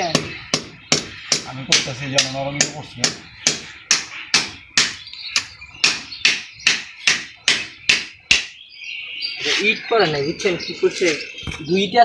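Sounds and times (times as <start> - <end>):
hammer striking steel chisel: 0.2 - 8.5.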